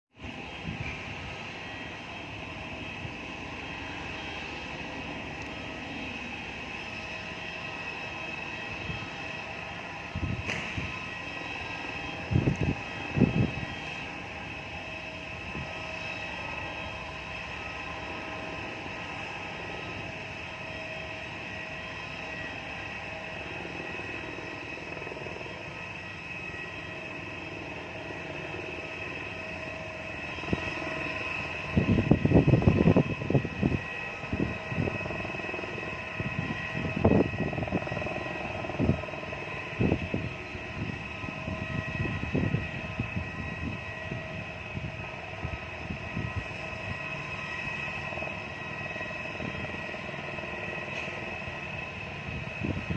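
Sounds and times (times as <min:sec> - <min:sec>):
helicopter turbine whine: 0:00.1 - 0:52.9
wind buffeting microphone: 0:00.2 - 0:04.8, 0:07.9 - 0:17.8, 0:29.2 - 0:52.9.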